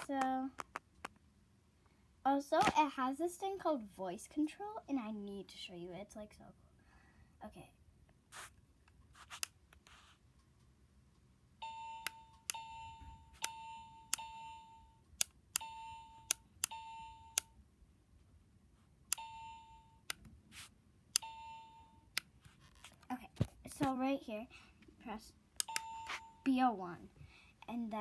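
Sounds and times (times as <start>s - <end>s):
alarm clock button clicks: 11.6s - 14.6s, 15.6s - 17.5s, 19.1s - 20.2s, 21.2s - 21.5s, 25.6s - 26.4s.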